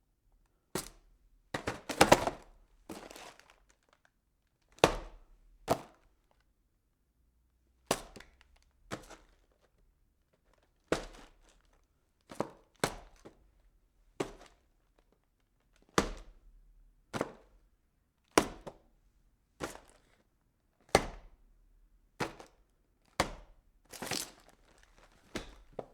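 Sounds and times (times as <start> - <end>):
cardboard boxes knocking and thudding: 25.2 - 25.9.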